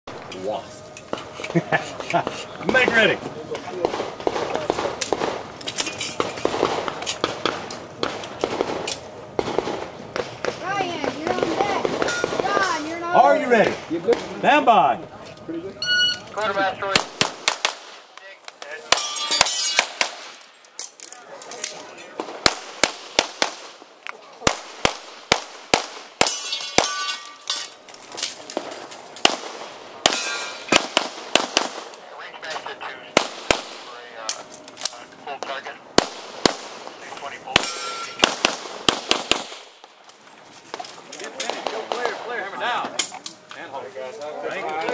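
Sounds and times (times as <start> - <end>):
pistol shots: 3.8 - 5.5, 6.2 - 10.6, 16.9 - 18.0, 18.9 - 20.4, 22.2 - 23.8, 24.4 - 27.2, 28.6 - 32.0, 33.1 - 34.0, 35.4 - 39.9
metallic ring: 15.8 - 16.3, 18.9 - 20.0, 26.2 - 27.8, 30.2 - 30.7, 37.6 - 38.2.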